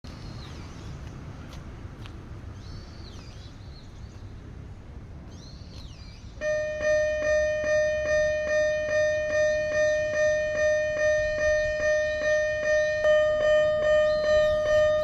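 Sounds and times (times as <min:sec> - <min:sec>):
outdoor background noise: 0:00.0 - 0:15.0
birds calling: 0:00.1 - 0:01.6, 0:02.4 - 0:04.5, 0:05.2 - 0:15.0
railway crossing warning bell: 0:06.4 - 0:15.0.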